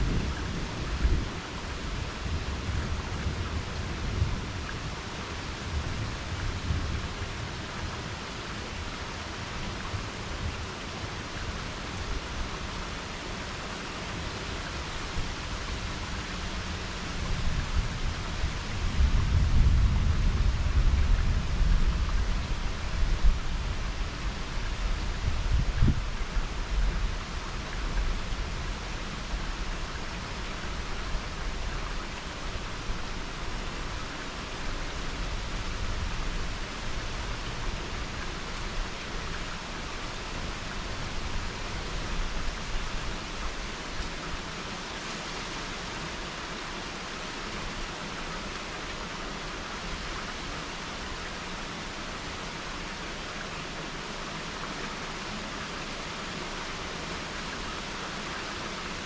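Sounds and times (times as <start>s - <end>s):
wind buffeting microphone: 0.0s - 8.2s, 16.7s - 39.4s
heavy rain hissing: 0.0s - 59.0s.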